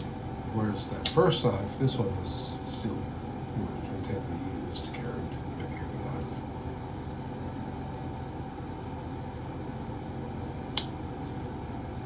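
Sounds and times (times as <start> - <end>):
low background hum: 0.0 - 12.0
sharp click: 10.7 - 11.0.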